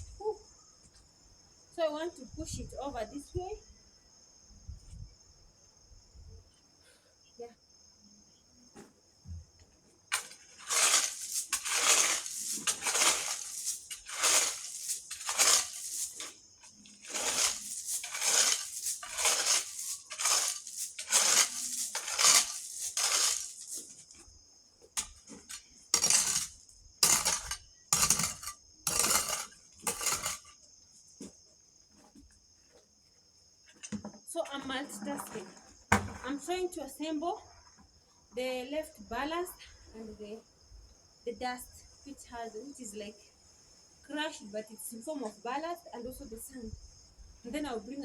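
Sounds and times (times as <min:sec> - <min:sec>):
crickets chirping: 0:00.0 - 0:48.0
scraping through crushed stone: 0:10.1 - 0:30.6.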